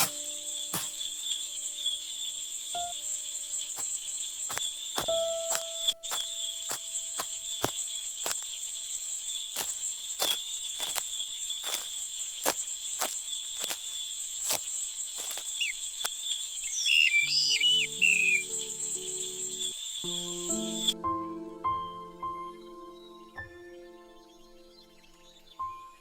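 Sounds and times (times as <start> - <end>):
footsteps: 0.0 - 1.1, 3.8 - 8.6, 9.6 - 15.6
small bird chirping: 0.0 - 20.1
crickets chirring: 0.0 - 20.9.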